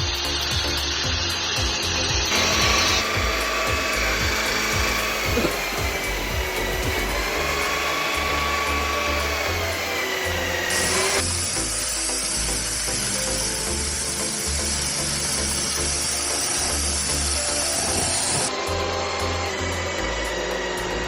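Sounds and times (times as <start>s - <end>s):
background music: 0.0s - 21.0s
electric drill whining: 0.0s - 21.0s.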